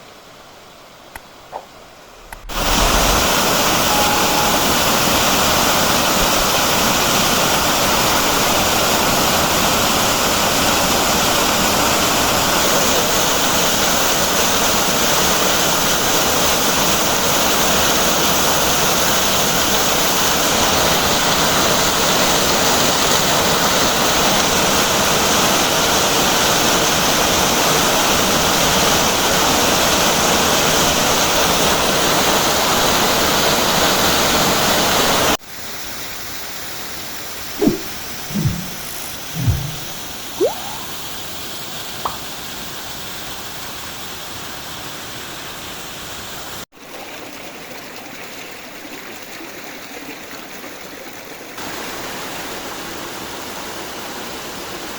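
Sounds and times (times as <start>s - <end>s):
waterfall pouring: 2.2s - 5.8s.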